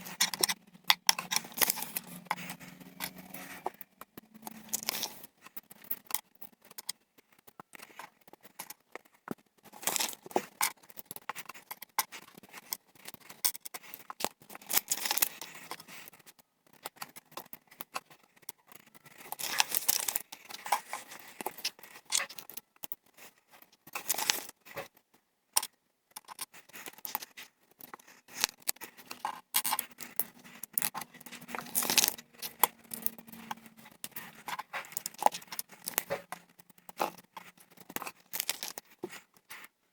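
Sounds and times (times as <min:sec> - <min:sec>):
plastic bricks clicking and clattering: 0:04.4 - 0:07.0, 0:16.8 - 0:23.0, 0:25.6 - 0:39.0
rustling: 0:26.6 - 0:39.7.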